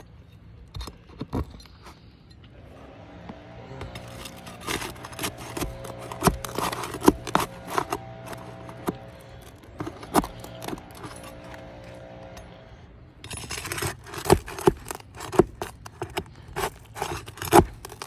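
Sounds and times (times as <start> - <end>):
hand tools scraping shingles: 0.0 - 18.0.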